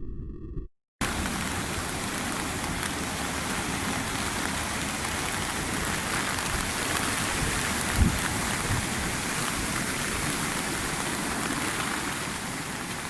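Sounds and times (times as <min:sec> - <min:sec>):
heavy rain: 0:01.0 - 0:13.0
strong wind: 0:06.5 - 0:10.3.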